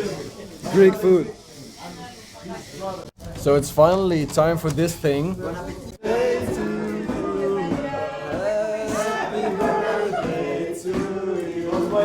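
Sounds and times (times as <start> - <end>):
voices singing held notes: 6.0 - 12.0.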